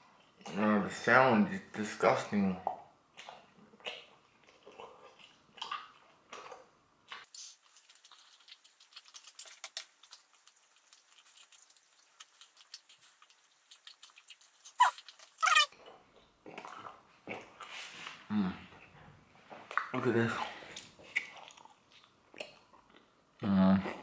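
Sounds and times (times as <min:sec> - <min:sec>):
person chewing gum: 0:03.2 - 0:17.7, 0:20.7 - 0:23.2.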